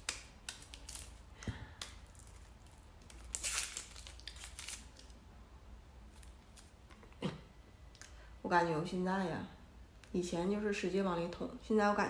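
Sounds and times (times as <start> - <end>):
plastic wrapping crinkling: 0.0 - 1.2, 2.0 - 5.2.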